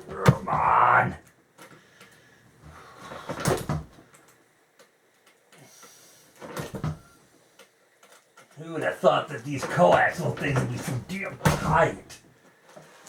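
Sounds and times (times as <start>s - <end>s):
chair parts knocking and clunking: 0.0s - 1.1s, 2.6s - 4.0s, 6.4s - 7.1s, 9.6s - 12.0s.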